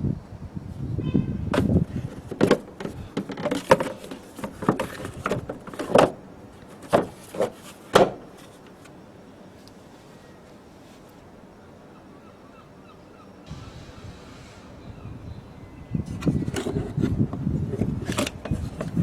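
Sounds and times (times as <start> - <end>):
knocks and clicks of parts handled: 1.5 - 8.9
low handling rumble: 13.5 - 19.0.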